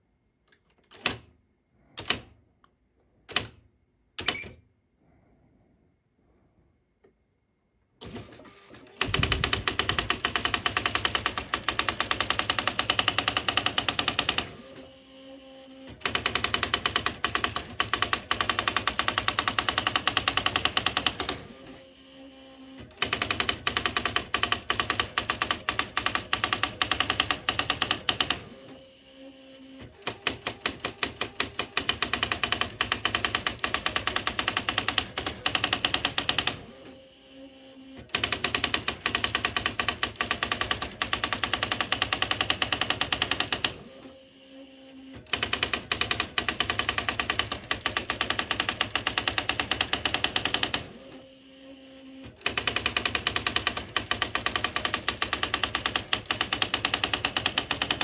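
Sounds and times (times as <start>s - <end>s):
faint motor hum: 8.6s - 23.9s.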